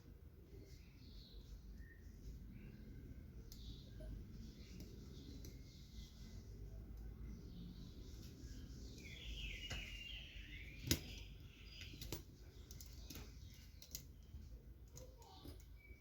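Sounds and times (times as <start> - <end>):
faint high chirps: 8.4 - 16.0
small parts clicking and tapping: 10.8 - 15.8.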